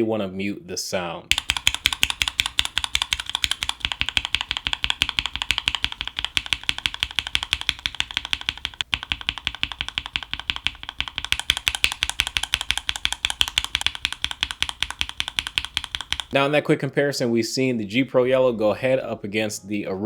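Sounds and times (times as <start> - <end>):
fast mechanical keyboard typing: 1.3 - 16.4.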